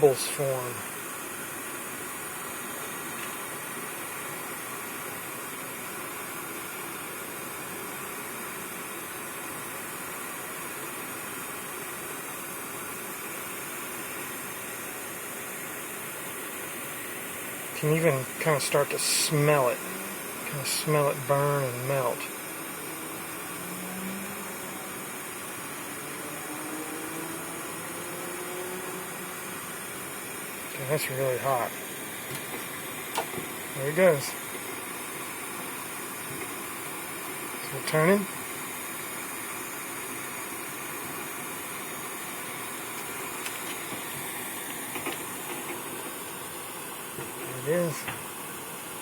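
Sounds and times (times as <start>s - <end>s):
torch flame hissing: 0.0s - 49.0s.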